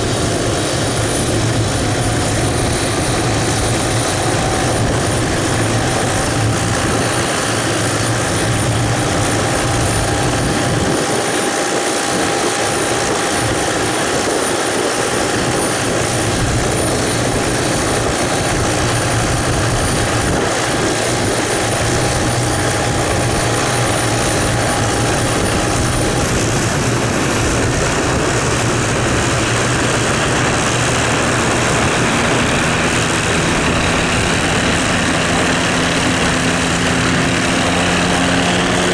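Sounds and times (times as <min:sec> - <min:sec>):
helicopter engine whine: 0:00.0 - 0:38.9
helicopter rotor noise: 0:00.0 - 0:38.9.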